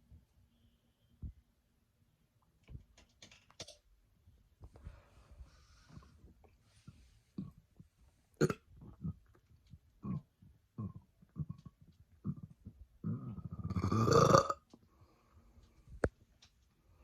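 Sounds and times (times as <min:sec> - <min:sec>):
woman burping: 0:08.4 - 0:09.2, 0:13.0 - 0:14.6.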